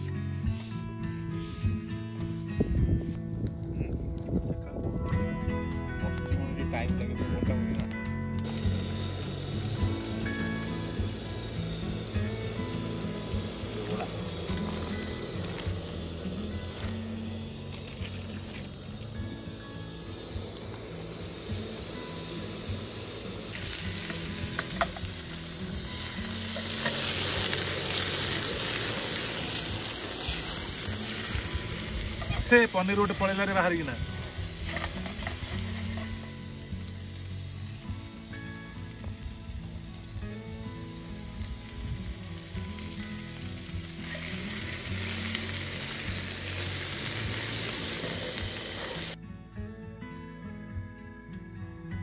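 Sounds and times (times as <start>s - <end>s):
food sizzling in a pan: 8.4s - 49.2s.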